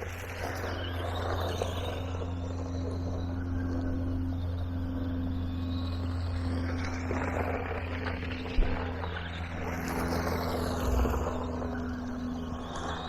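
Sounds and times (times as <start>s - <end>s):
rc car motor whine: 0.0s - 13.0s.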